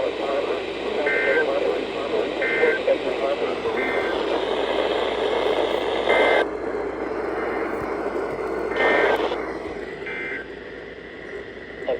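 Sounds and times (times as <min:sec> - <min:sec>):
radio static hiss: 0:00.0 - 0:06.5, 0:08.7 - 0:09.4.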